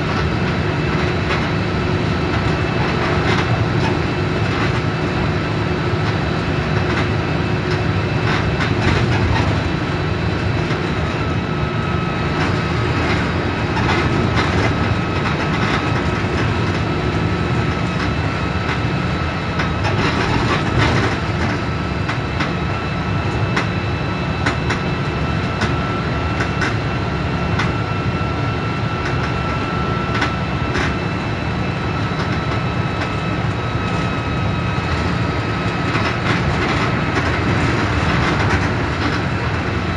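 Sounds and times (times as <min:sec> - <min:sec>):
bus diesel engine drone: 0:00.0 - 0:39.9
thin steady whine: 0:00.0 - 0:39.9
bodywork rattles and clicks: 0:02.3 - 0:05.0, 0:06.0 - 0:09.7, 0:10.4 - 0:18.9, 0:19.5 - 0:22.6, 0:29.0 - 0:31.1, 0:32.0 - 0:39.8.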